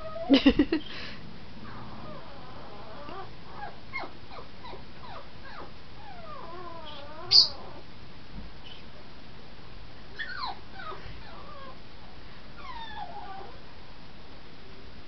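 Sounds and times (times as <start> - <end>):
dog whining: 0.0 - 0.5, 1.6 - 7.8, 10.2 - 11.8, 12.6 - 13.6.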